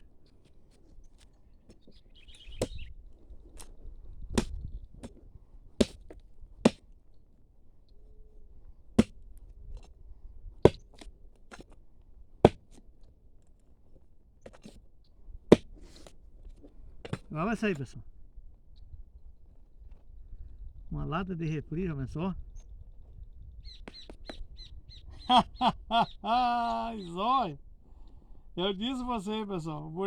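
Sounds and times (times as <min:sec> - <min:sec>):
digging tool chopping into soil: 0:02.6 - 0:02.8, 0:04.3 - 0:05.2, 0:05.8 - 0:06.9, 0:09.0 - 0:09.2, 0:10.6 - 0:11.8, 0:12.4 - 0:12.8, 0:15.5 - 0:16.2.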